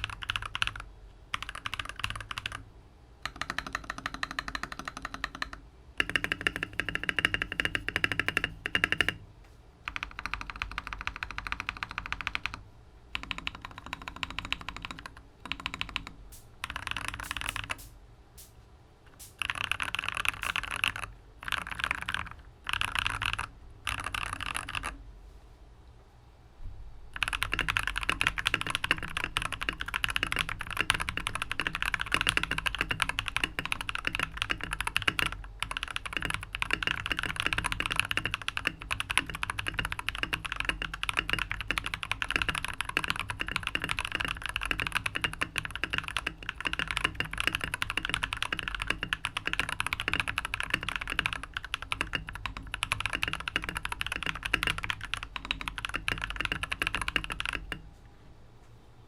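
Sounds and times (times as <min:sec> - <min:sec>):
mechanical keyboard typing: 0:00.0 - 0:02.6, 0:03.2 - 0:09.2, 0:09.8 - 0:17.9, 0:19.1 - 0:25.0, 0:27.1 - 0:57.8.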